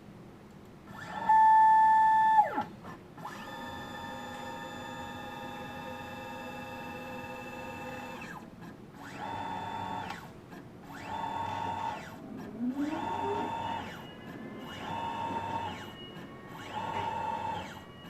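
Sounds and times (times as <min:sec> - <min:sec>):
small electric motor whining: 0:10.9 - 0:18.0.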